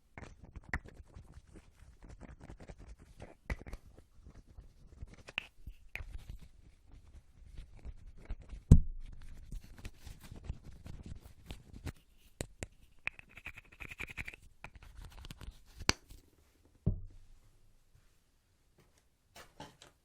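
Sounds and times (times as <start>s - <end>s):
scratchy tapping and clicks: 9.4s - 16.2s
heavy thump: 16.8s - 17.2s.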